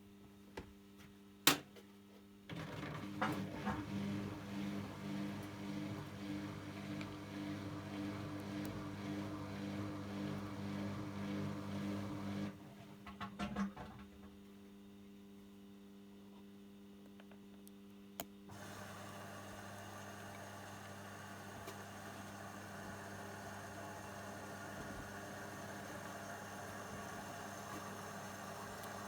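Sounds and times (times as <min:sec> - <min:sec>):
washing machine humming: 0:02.5 - 0:14.3, 0:18.5 - 0:29.0.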